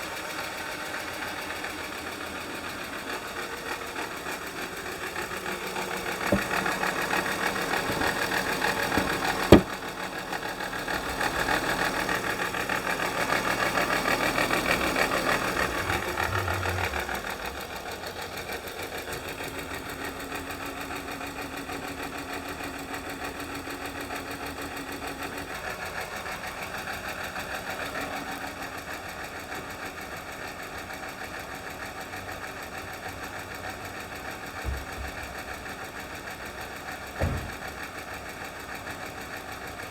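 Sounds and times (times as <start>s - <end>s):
engine running with rapid ticking: 0.0s - 39.9s
sharp knock: 9.0s - 9.7s.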